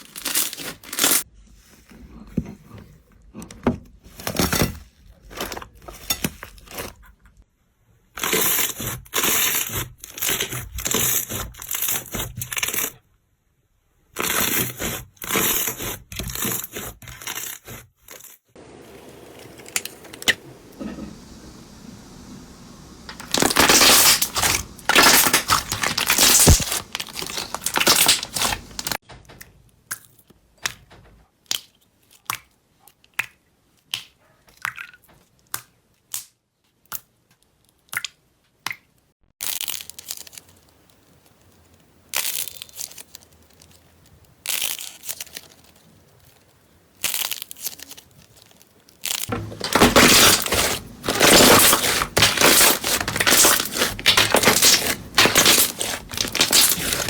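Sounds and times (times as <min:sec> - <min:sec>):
slime crunchy crackling: 0:18.8 - 0:29.0, 0:47.0 - 0:57.0
slime squishing: 0:18.8 - 0:29.0, 0:49.0 - 0:57.0.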